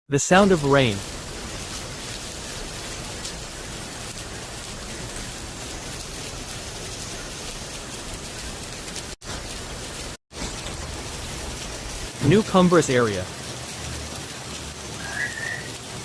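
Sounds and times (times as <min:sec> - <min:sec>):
steady rainfall: 0:00.2 - 0:16.0.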